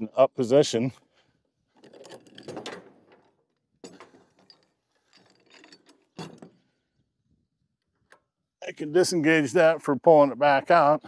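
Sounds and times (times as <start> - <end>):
winch ratcheting clicks and rattles: 1.7 - 6.6.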